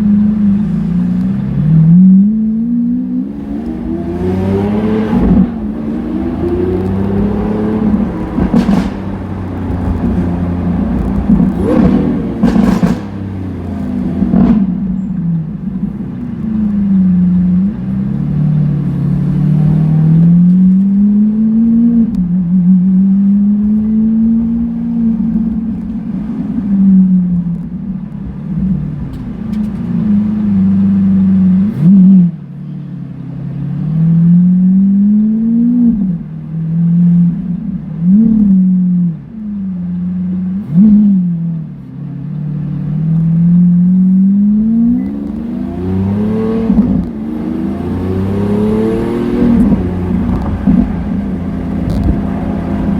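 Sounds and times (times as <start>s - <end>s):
sports car engine accelerating: 0.0s - 52.9s
exhaust crackles and pops: 3.5s - 19.4s, 27.2s - 30.1s, 43.1s - 52.9s.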